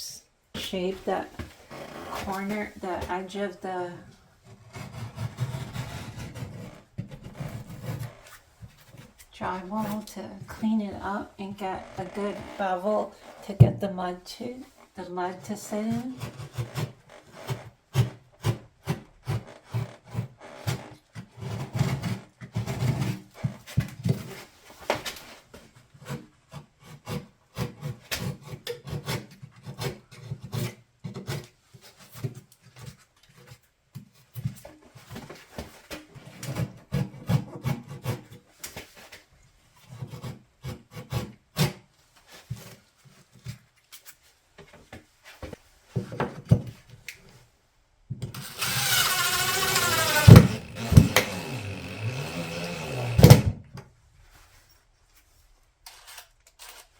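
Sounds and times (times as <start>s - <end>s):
hand tool scraping drywall: 4.0s - 13.8s, 15.8s - 33.6s, 39.8s - 41.8s, 48.4s - 53.5s.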